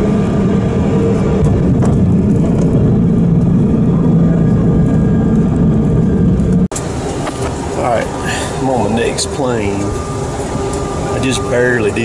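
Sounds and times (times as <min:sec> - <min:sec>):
jet engines and airflow roar: 0:00.0 - 0:12.0
low hum: 0:00.0 - 0:12.0.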